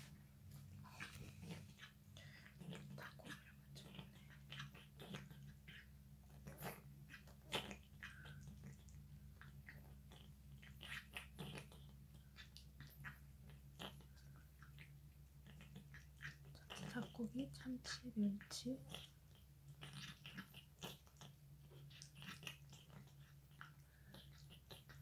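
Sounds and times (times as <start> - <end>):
cat chewing food: 0.0 - 25.0.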